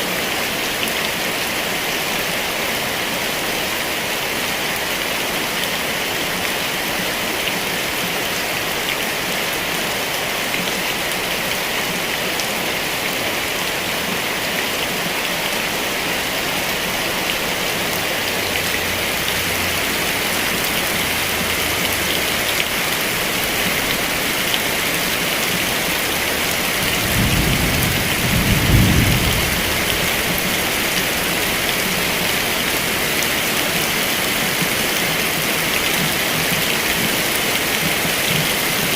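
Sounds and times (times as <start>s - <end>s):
heavy rain falling: 0.0s - 38.9s
low rumble of thunder: 26.8s - 30.4s.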